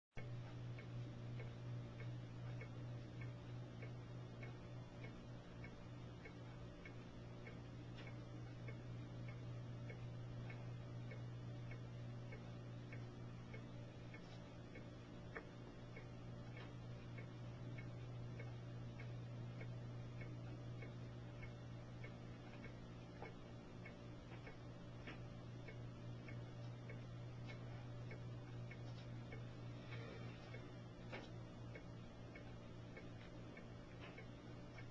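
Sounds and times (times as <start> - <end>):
faint regular ticking: 0.2 - 34.9
steady low hum: 0.2 - 34.9.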